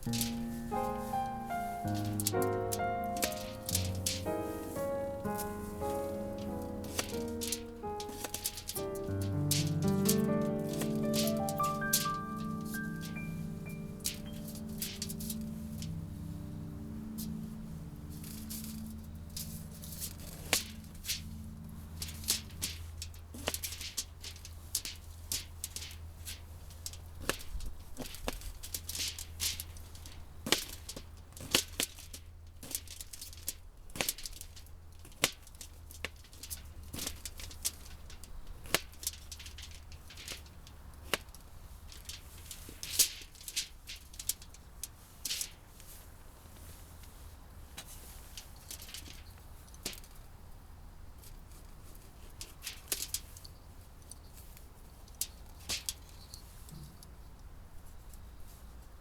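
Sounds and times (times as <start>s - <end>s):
low steady hum: 0.0s - 24.0s
sharp clicks and crackles: 0.0s - 29.7s
background music with mallet tones: 0.1s - 22.6s.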